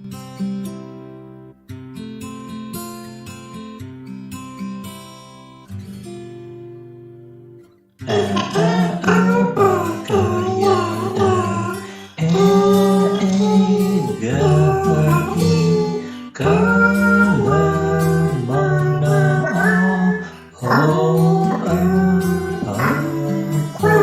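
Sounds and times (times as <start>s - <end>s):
person singing: 8.0s - 24.0s.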